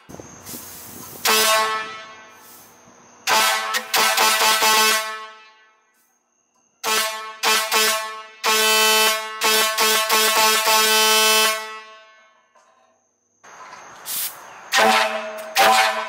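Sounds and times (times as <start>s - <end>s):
fire truck air horn blasts: 1.0s - 6.0s, 6.8s - 12.5s, 14.7s - 16.0s.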